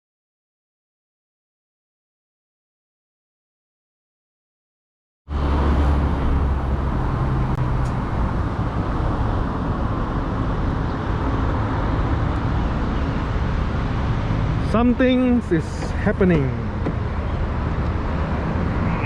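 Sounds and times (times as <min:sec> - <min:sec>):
car engine and road rumble: 0:05.3 - 0:19.0.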